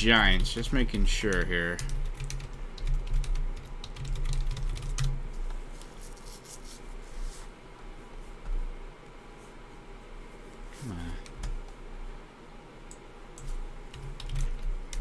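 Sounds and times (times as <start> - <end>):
computer keyboard typing: 0.2 - 5.2, 13.4 - 15.0.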